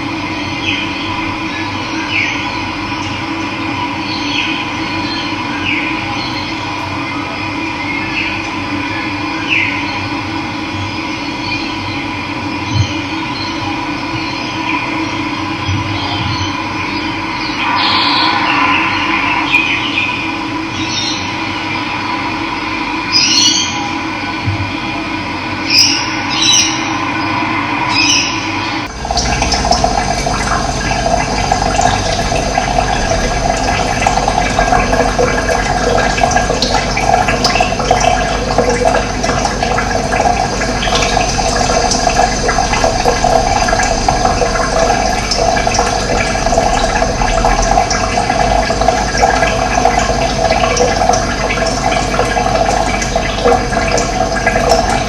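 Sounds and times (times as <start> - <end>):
steady hum: 0.0 - 55.0
running water rushing: 17.3 - 21.2, 27.9 - 55.0
high bird chirps: 17.4 - 21.3.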